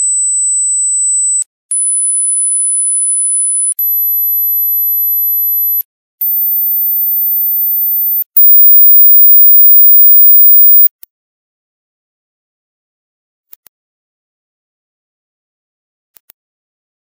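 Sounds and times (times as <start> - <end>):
high-pitched sine test tones: 3.7 - 10.9.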